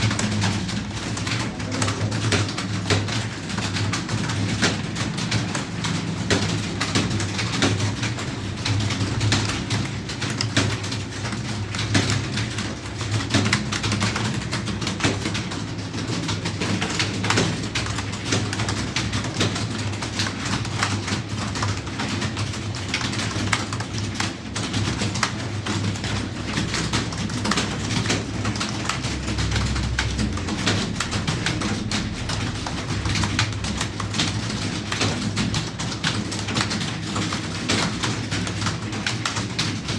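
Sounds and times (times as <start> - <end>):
keyboard typing clicks: 0.0 - 39.9
steady low hum: 26.3 - 34.8.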